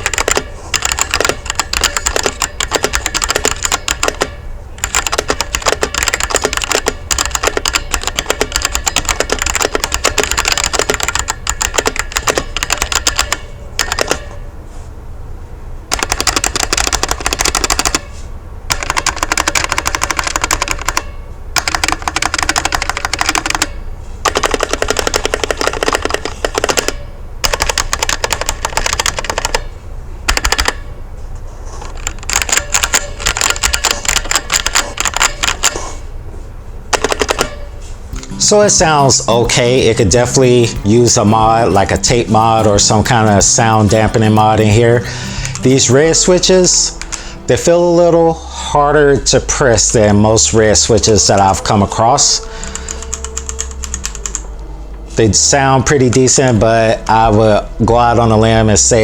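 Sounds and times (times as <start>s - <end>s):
fast typing on mechanical keyboard: 0.0s - 14.2s, 15.9s - 18.1s, 18.7s - 29.7s, 30.3s - 30.8s, 31.9s - 35.8s, 36.9s - 37.6s, 38.3s - 46.4s, 51.0s - 54.4s.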